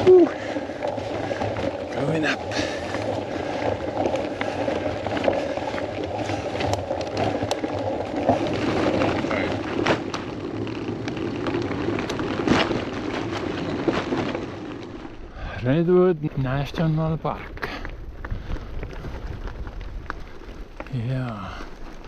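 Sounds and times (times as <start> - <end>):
bicycle tyres rolling on trail: 0.0 - 22.0
bike clicks and knocks: 0.6 - 15.2.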